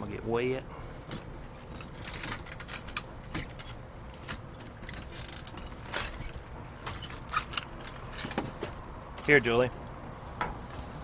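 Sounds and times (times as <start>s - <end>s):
bottles clinking and rattling: 1.0s - 8.8s
trash rustling: 1.0s - 9.4s.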